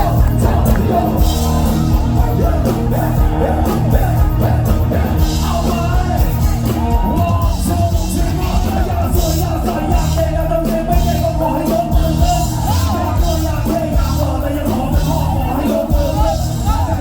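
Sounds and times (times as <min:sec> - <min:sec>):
amplified live band music: 0:00.0 - 0:17.0
heavy steady bass: 0:00.0 - 0:17.0.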